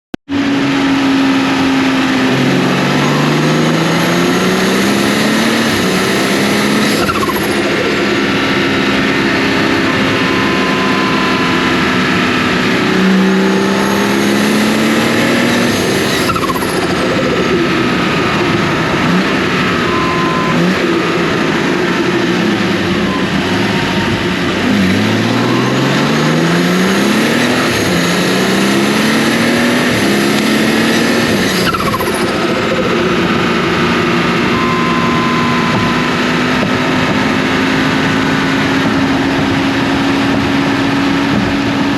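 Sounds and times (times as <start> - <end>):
car engine accelerating: 0.3 - 41.9
turbo whistle: 0.8 - 17.1, 19.7 - 21.3, 22.4 - 33.1, 33.9 - 37.4.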